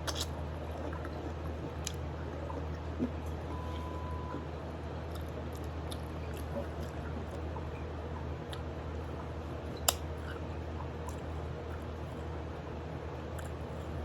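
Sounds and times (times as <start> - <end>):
wet chewing and sucking: 0.0 - 3.2
steady low hum: 0.0 - 14.0.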